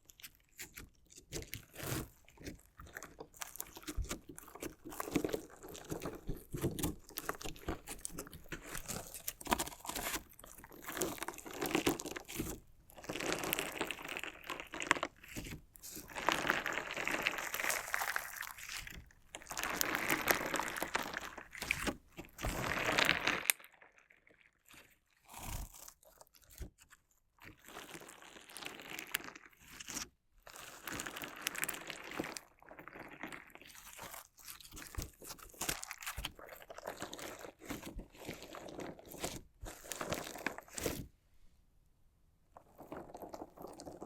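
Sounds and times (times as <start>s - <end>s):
crunchy slime crackling: 0.0s - 26.7s, 30.6s - 41.1s.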